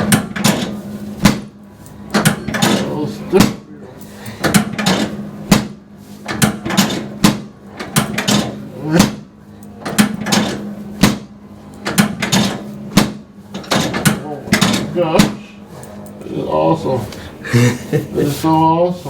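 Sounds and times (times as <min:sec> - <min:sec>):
steady low hum: 0:00.0 - 0:19.0
sharp clacks and knocks: 0:04.4 - 0:09.2.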